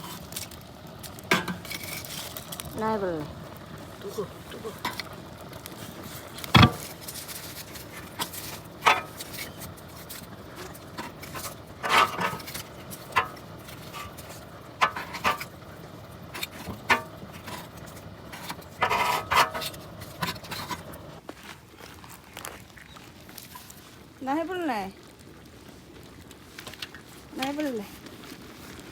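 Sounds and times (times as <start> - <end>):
foil rustling: 0.0 - 28.9
tools knocking and scraping: 1.3 - 2.4, 4.8 - 5.2, 6.4 - 21.2.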